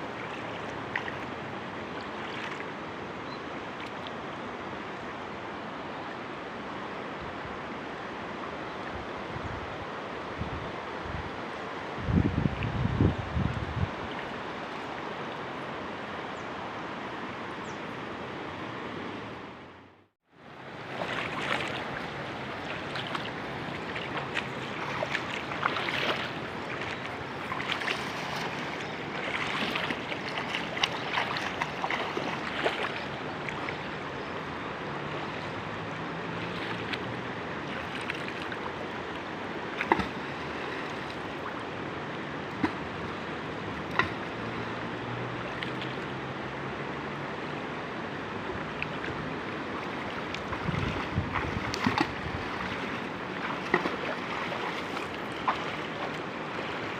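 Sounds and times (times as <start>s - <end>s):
river water rushing: 0.0s - 56.9s
small splashes and crackles: 0.2s - 1.4s, 2.0s - 2.7s, 20.9s - 33.9s, 36.3s - 41.6s, 45.3s - 46.2s, 48.6s - 56.9s.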